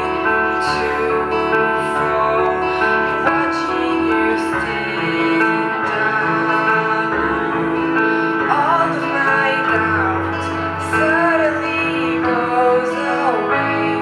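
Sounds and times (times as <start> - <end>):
person singing with accompaniment: 0.0 - 14.0.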